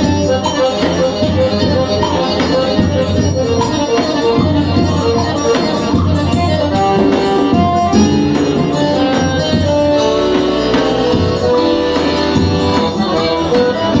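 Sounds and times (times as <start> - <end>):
dance band music: 0.0 - 14.0.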